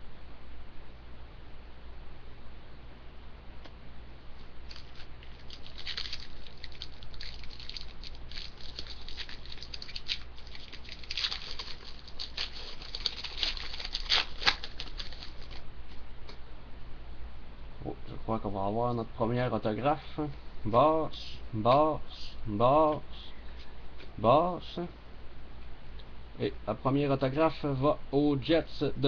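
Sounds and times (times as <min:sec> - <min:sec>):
foil pack crinkling: 0:04.6 - 0:16.0
cards shuffled and flicked: 0:04.7 - 0:16.0.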